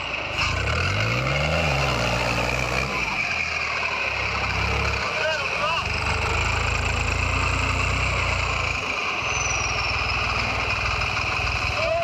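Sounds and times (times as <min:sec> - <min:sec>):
bulldozer engine running: 0:00.0 - 0:12.0.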